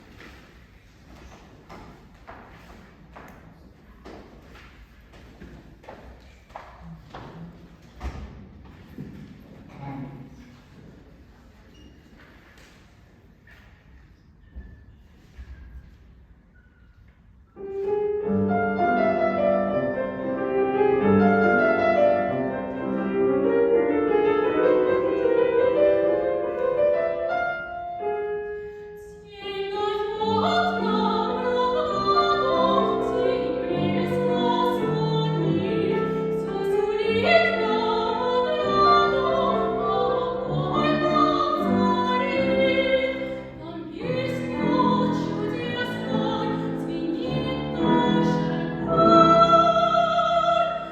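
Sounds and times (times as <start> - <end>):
piano chords: 17.6 - 50.9
woman singing operatically: 29.3 - 50.9.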